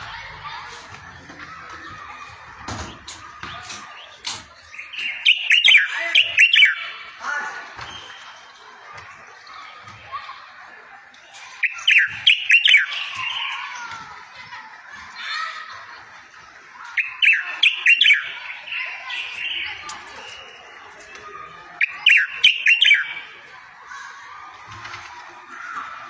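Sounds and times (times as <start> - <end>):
soft bird twittering: 0.5 - 7.1, 11.4 - 13.8, 17.0 - 23.4
songbird singing high notes: 4.7 - 6.9, 11.6 - 13.5, 17.0 - 20.7, 21.8 - 23.3.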